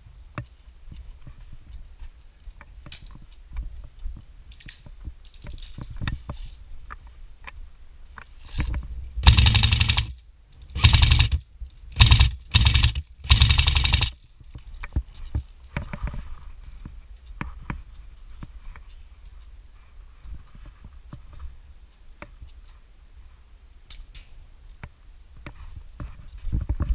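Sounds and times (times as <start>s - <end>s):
airsoft gun firing bursts: 9.2s - 11.4s, 12.0s - 14.2s.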